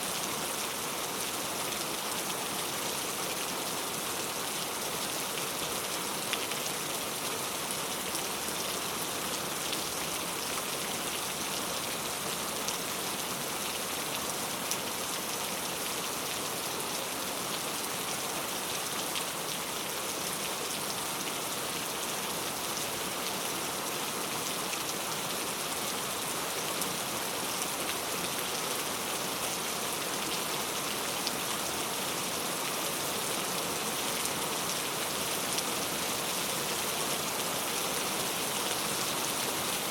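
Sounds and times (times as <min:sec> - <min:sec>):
heavy rain falling: 0:26.1 - 0:39.9.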